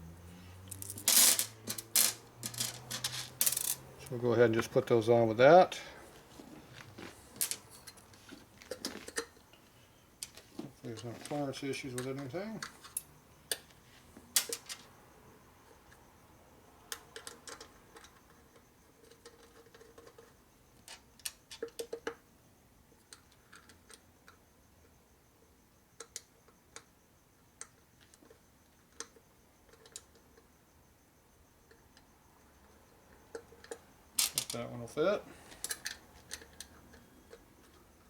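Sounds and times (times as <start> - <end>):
metal bolts clicking and clinking: 0.7 - 4.2.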